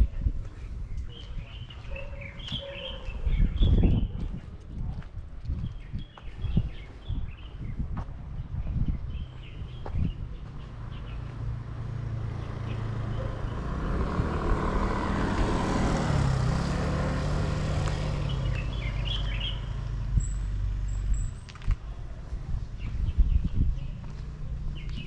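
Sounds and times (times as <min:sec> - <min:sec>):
bird chirping: 0:00.6 - 0:04.2, 0:18.0 - 0:22.0
vehicle driving past: 0:10.8 - 0:20.9.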